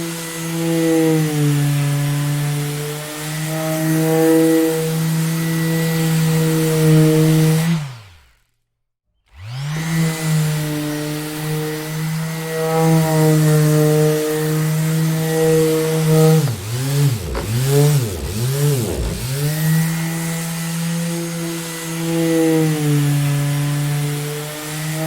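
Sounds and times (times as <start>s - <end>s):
orbital sander running: 11.4s - 19.5s.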